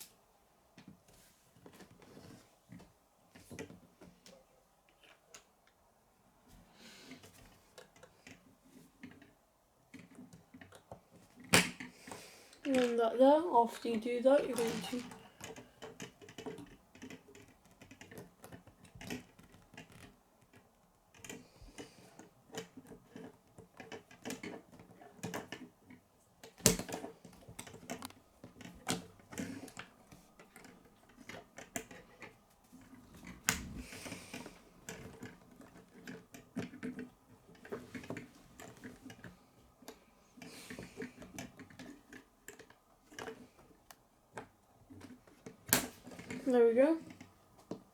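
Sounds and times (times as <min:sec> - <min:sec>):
plastic pieces clicking together: 0:12.6 - 0:13.2, 0:13.8 - 0:20.2
sharp plastic snap: 0:45.7 - 0:46.0.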